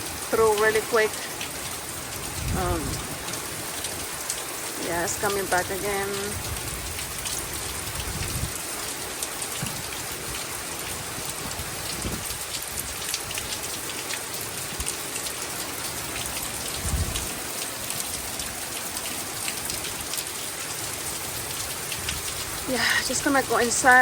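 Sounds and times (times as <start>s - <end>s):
heavy rain pattering: 0.0s - 24.0s
wind buffeting microphone: 2.0s - 8.9s, 9.5s - 13.6s, 16.3s - 17.6s.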